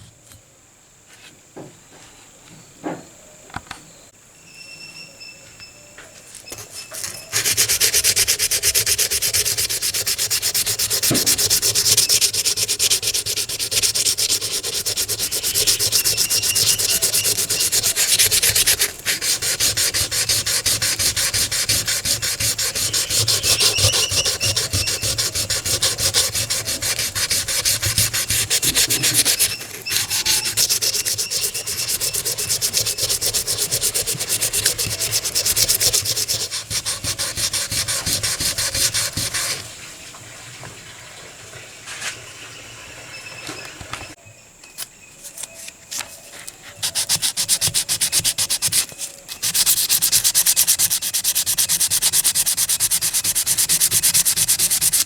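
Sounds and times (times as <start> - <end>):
hand sanding metal part: 6.5 - 39.7, 45.3 - 55.0.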